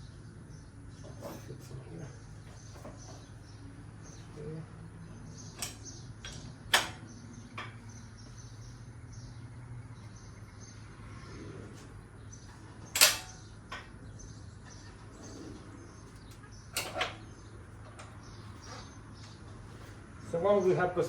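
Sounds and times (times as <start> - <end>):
metal arms clanking on spring: 13.0 - 13.4.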